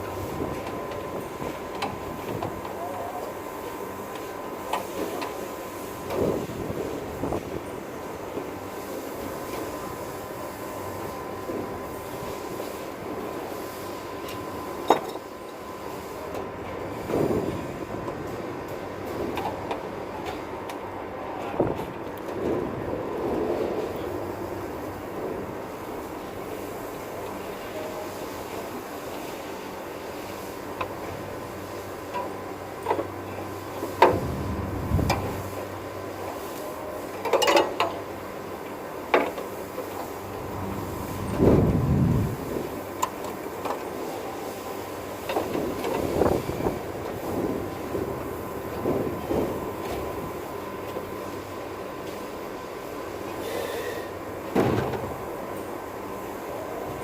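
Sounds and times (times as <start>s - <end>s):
steady background hum: 0.0s - 57.0s
torch flame roaring: 33.7s - 35.9s, 40.2s - 43.0s.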